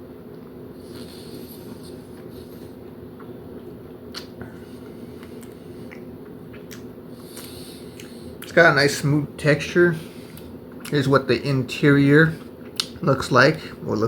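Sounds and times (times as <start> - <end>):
low room hum: 0.0 - 14.0
person chewing: 0.8 - 8.6, 10.0 - 11.1, 12.3 - 13.0.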